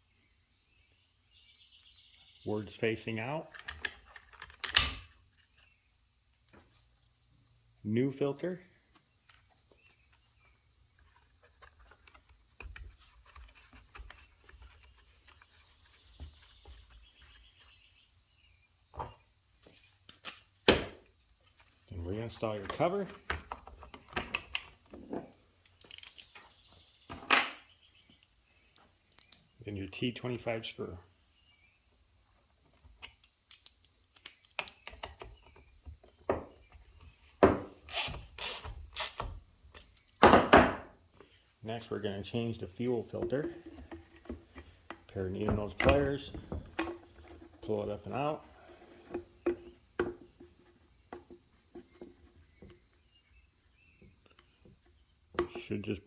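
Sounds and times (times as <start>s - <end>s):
screwdriver rasping strokes: 37.9s - 39.3s.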